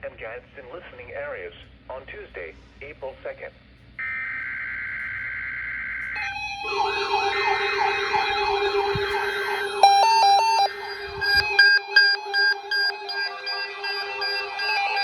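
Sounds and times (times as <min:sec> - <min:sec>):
on-off beeping: 0:09.8 - 0:10.7
steady alert tones: 0:09.8 - 0:10.7.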